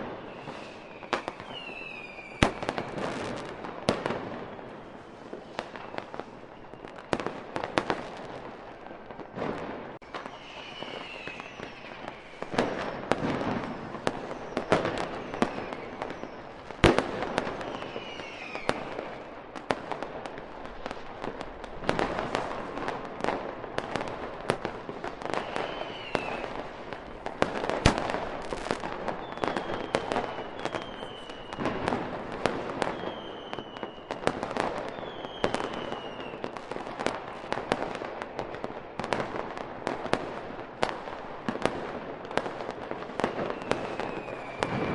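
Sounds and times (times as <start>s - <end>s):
firework whistles sliding down: 0.0s - 3.5s, 10.1s - 16.6s, 17.3s - 19.3s, 25.2s - 26.7s, 27.8s - 31.9s, 32.8s - 36.6s, 43.2s - 44.9s
firework bangs and crackling: 0.0s - 44.9s.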